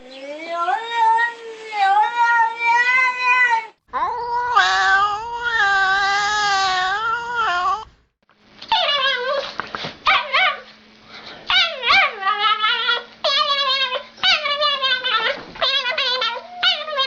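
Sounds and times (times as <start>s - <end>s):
dog whining and yelping: 8.7s - 10.7s, 11.5s - 17.0s.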